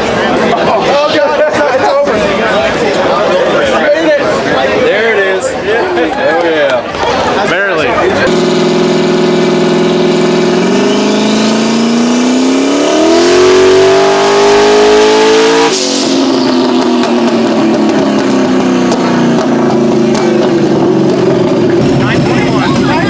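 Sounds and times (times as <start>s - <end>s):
race car engine revving: 8.0s - 23.0s
sharp hiss of throttle closing: 15.5s - 16.5s.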